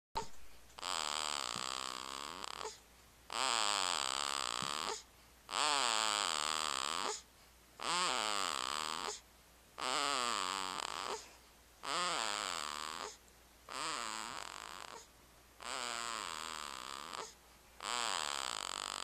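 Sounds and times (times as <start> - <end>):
snoring with wavering pitch: 11.9 - 19.0.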